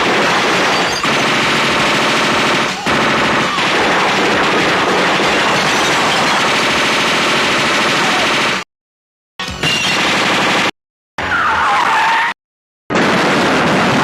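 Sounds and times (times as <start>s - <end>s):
machine-gun fire: 0.0s - 8.7s, 9.6s - 10.7s, 12.9s - 14.0s.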